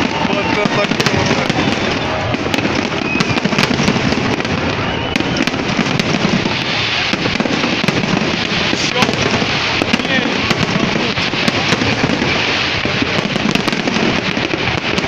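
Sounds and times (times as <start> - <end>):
fireworks crackling and banging: 0.0 - 15.0.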